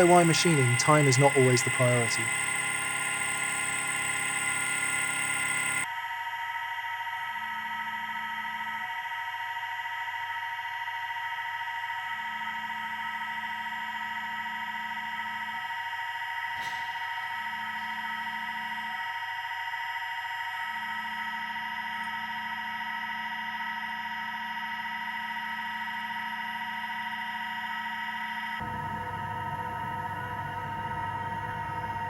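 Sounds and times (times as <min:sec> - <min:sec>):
high-pitched spindle whine: 0:00.0 - 0:05.9.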